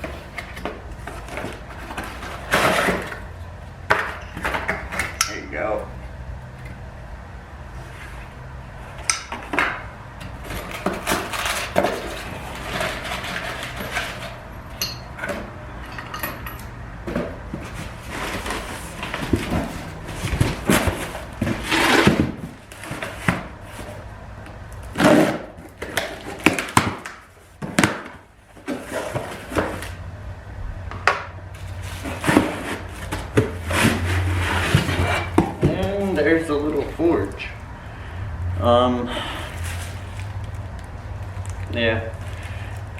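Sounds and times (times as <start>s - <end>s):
metal parts clanking and rattling: 0.0s - 5.6s, 9.0s - 23.0s.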